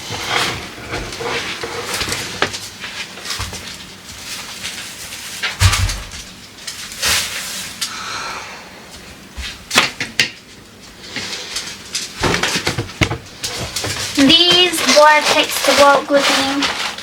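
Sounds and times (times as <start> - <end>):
items being set down: 1.8 - 6.3.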